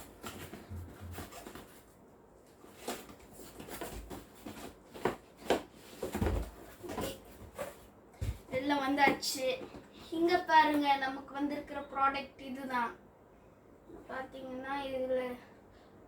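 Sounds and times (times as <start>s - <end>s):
cardboard box rustling and knocking: 2.8s - 8.6s.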